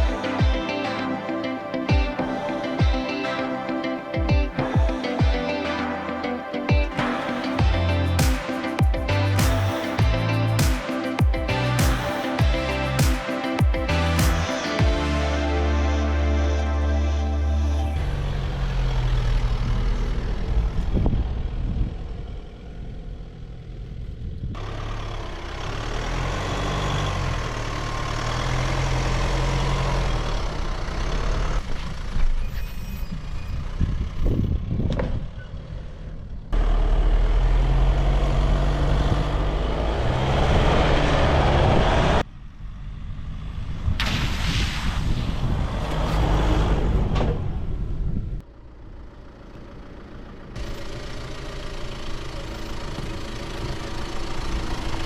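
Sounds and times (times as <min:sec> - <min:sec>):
vehicle engine rumble: 0:13.9 - 0:44.2, 0:45.1 - 0:55.0.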